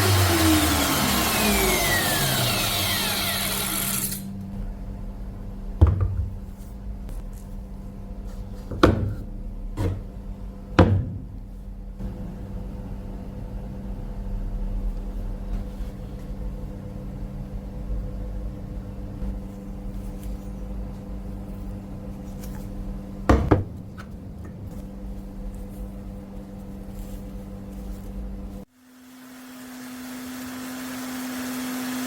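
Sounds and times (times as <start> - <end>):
electric motor humming: 0.0 - 4.4.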